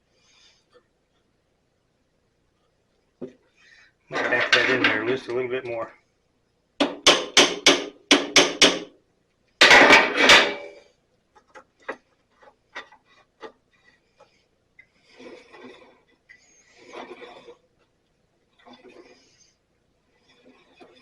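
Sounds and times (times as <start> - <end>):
metal tool clatter: 4.1 - 5.2, 9.6 - 10.8.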